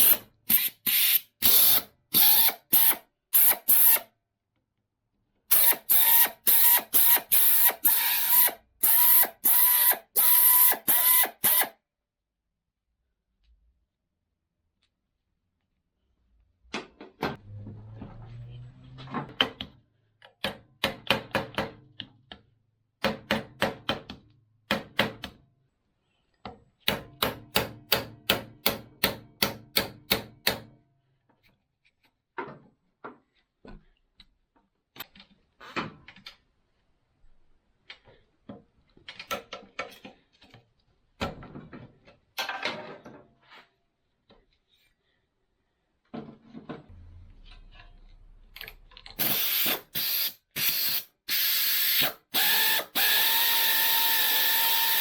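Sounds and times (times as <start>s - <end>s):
tools knocking and clattering: 38.5s - 43.4s.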